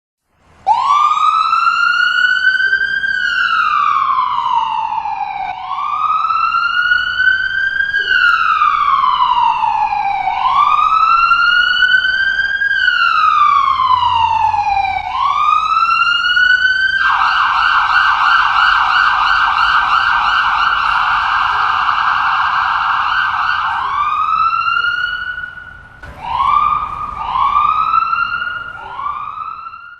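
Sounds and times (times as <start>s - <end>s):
ambulance siren wailing: 0.6s - 29.9s.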